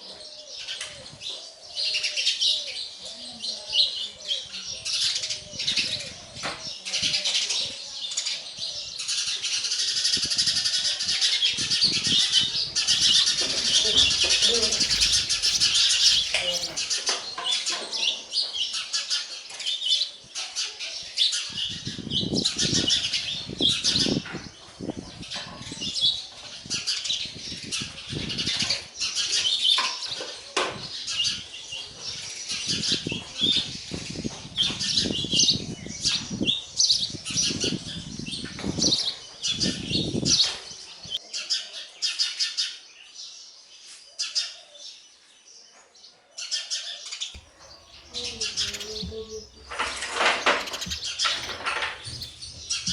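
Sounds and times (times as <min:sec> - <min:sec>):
sparrows chirping: 0:12.4 - 0:17.0, 0:47.4 - 0:52.9
wings fluttering: 0:12.6 - 0:16.9, 0:47.4 - 0:52.9.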